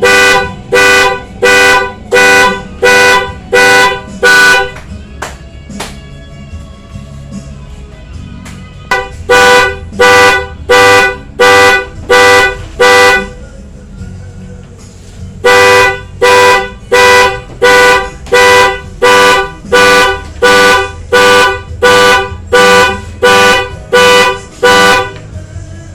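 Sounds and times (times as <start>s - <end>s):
scooter horn beeping: 0.0s - 5.0s, 8.9s - 13.5s, 15.4s - 25.3s.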